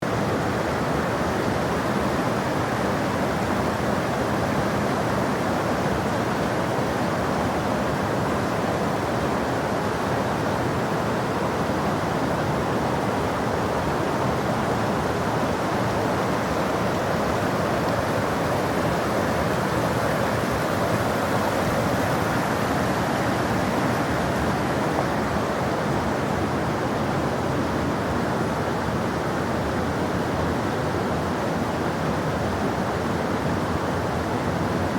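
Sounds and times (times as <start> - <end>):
stream water gushing: 0.0 - 34.9.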